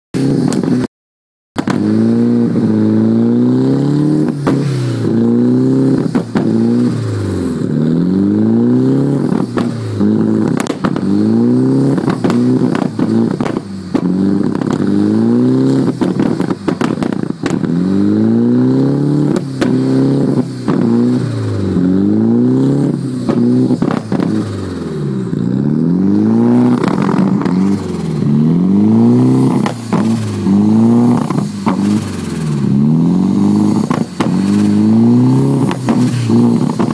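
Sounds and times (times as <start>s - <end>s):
car engine rough idle hunting: 26.5s - 36.9s.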